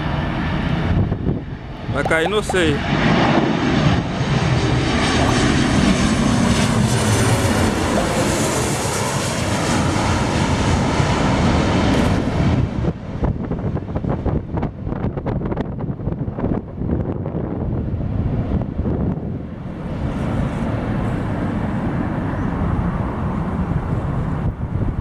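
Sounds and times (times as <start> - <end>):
wind buffeting microphone: 0.0 - 4.5, 10.8 - 25.0.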